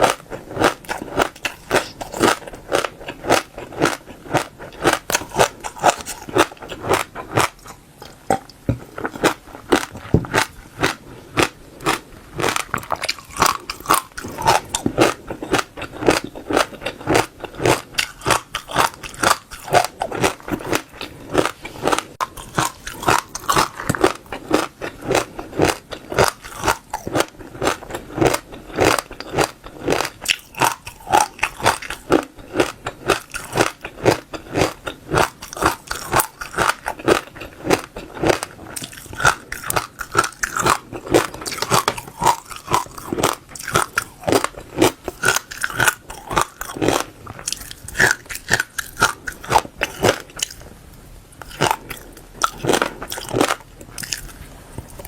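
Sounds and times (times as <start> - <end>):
seeds being chewed: 0.0 - 50.7, 51.4 - 55.0.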